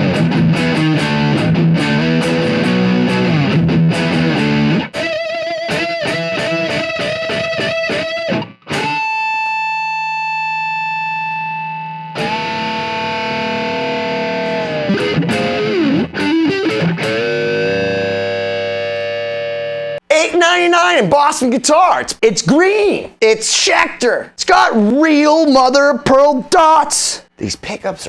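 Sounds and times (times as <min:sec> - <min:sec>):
distorted electric guitar: 0:00.0 - 0:20.1.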